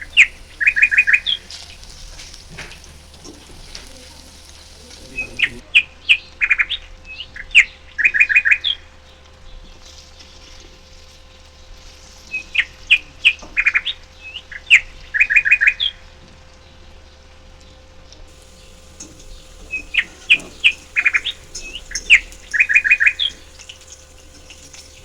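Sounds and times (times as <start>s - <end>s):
songbird singing: 0.0s - 6.2s, 18.3s - 25.0s.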